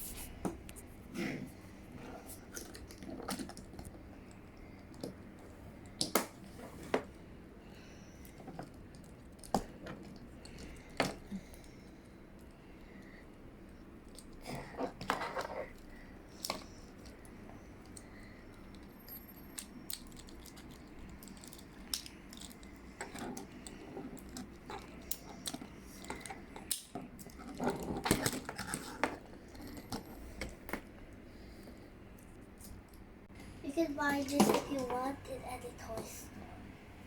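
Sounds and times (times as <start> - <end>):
plastic toy bricks clicking: 19.6 - 29.0.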